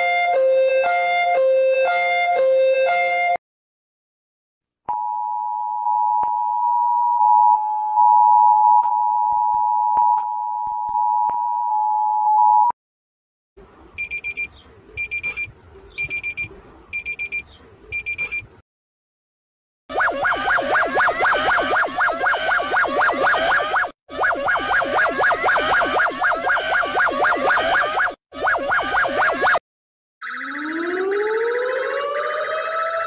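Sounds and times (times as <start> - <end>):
short high beeps: 14.0 - 18.5
two-tone alert alarm: 14.0 - 18.5, 19.9 - 29.6, 30.2 - 33.0.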